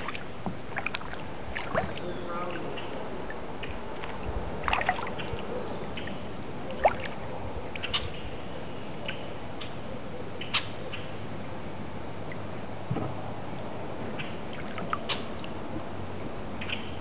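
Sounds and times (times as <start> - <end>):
paddle knocks and drips: 0.0 - 6.1, 6.8 - 8.0, 14.0 - 15.6.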